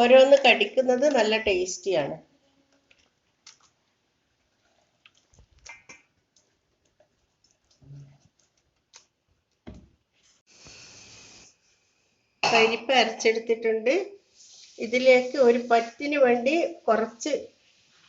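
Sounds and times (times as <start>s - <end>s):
short steady hiss: 10.4s - 12.0s, 14.2s - 16.0s.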